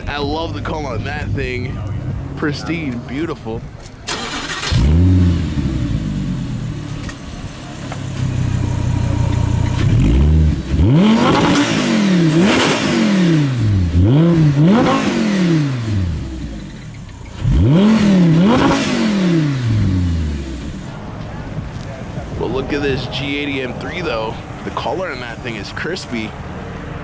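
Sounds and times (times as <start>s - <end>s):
car engine revving: 3.6s - 22.4s.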